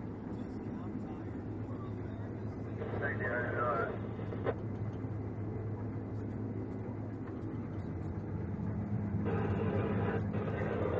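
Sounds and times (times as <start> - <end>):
farm machine engine droning: 7.3 - 10.9.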